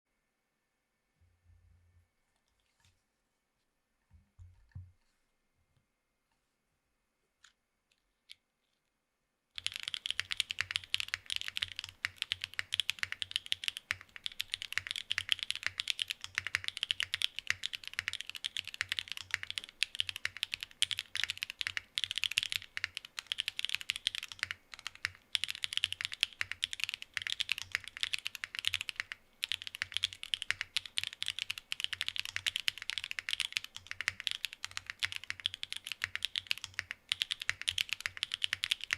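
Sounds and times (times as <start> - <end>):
faint keyboard clicks: 9.6 - 38.9
fast typing on mechanical keyboard: 9.6 - 38.9.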